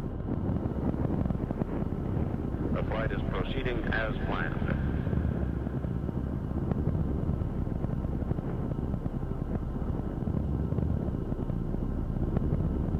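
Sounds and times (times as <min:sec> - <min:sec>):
faint high hum: 0:00.0 - 0:12.9
low rumbling drone: 0:00.0 - 0:12.9.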